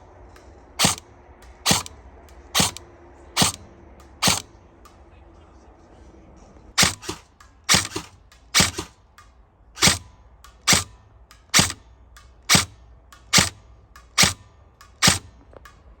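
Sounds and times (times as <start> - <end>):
airsoft rifle firing: 0.8 - 4.6, 6.8 - 9.2, 9.8 - 15.8.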